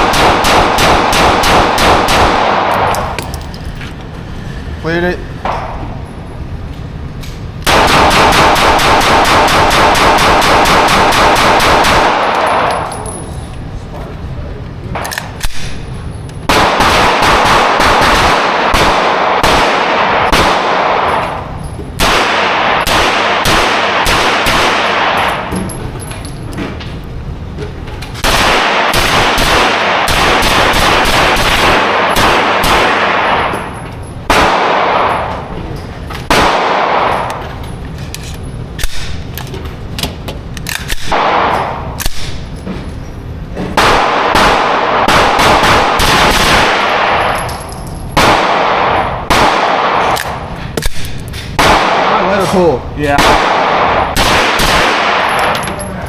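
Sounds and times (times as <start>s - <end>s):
rapid gunfire: 0.0s - 2.9s, 7.7s - 12.3s, 16.5s - 21.1s, 22.0s - 25.5s, 28.2s - 33.5s, 43.8s - 47.2s, 53.1s - 55.5s.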